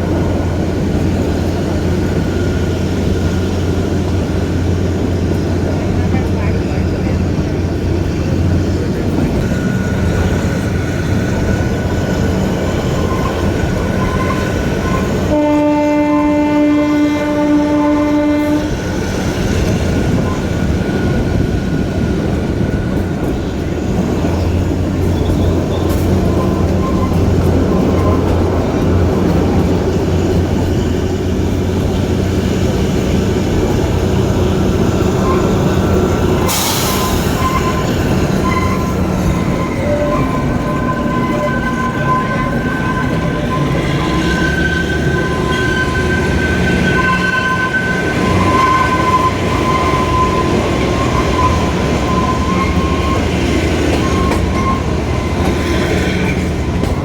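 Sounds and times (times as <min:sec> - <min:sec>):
train wheels and engine rumbling: 0:00.0 - 0:57.0
locomotive horn blast: 0:14.2 - 0:18.8.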